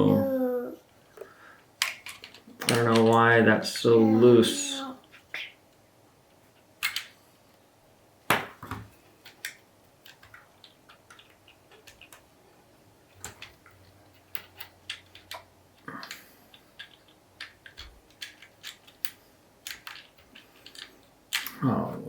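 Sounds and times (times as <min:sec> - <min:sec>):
plastic bricks clicking together: 0:01.8 - 0:03.2, 0:06.6 - 0:07.2, 0:09.2 - 0:12.3, 0:13.1 - 0:21.6.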